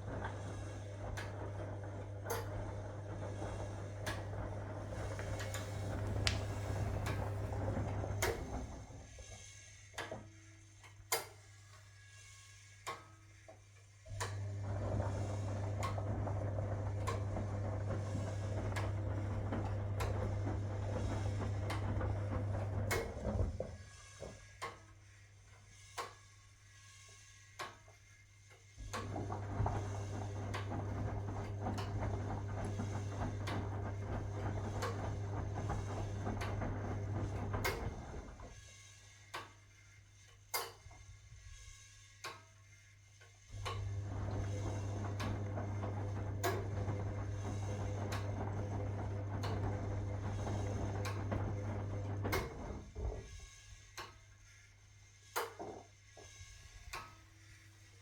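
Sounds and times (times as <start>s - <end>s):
washing machine motor humming: 0.0s - 9.4s, 14.1s - 23.8s, 28.8s - 38.7s, 43.5s - 54.0s.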